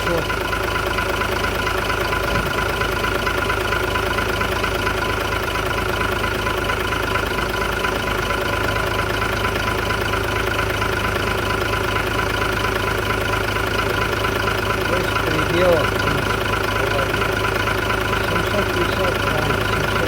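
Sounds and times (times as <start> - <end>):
truck engine idling: 0.0 - 20.0.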